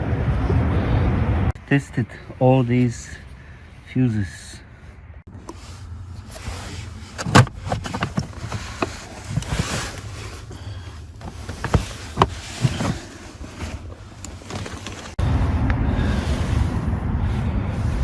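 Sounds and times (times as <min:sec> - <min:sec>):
clicks and knocks of car parts: 0:07.1 - 0:10.2, 0:11.1 - 0:15.2.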